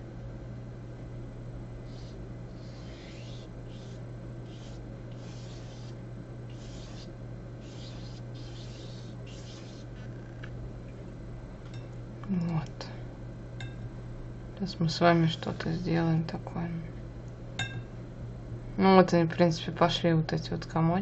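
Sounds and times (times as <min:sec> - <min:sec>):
steady low hum: 0:00.0 - 0:21.0
paintbrush scratchy strokes: 0:01.9 - 0:10.0.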